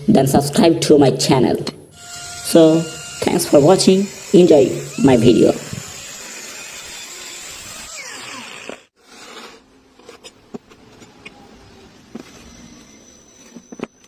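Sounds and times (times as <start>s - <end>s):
power tool running: 1.9s - 9.4s.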